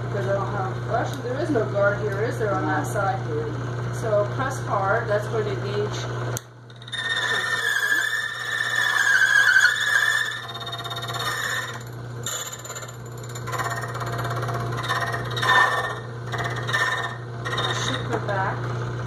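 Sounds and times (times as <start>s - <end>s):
cutter squealing against key: 6.7s - 18.2s
key cutting machine motor hum: 10.3s - 18.2s.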